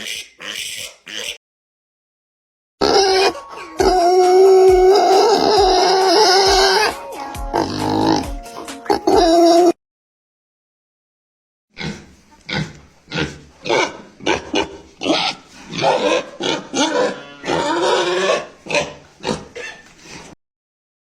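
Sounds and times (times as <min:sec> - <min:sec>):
pig grunts and squeals: 0:00.0 - 0:01.4, 0:02.8 - 0:09.8, 0:11.7 - 0:20.4.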